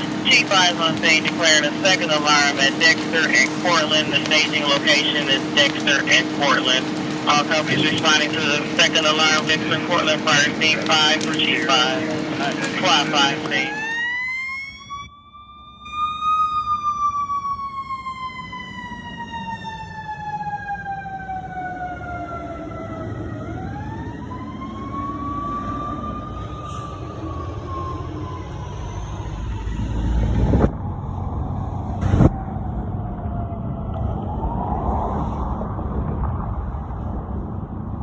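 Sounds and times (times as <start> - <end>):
truck engine rumble: 0.0 - 14.1
fire truck siren winding: 11.2 - 20.9.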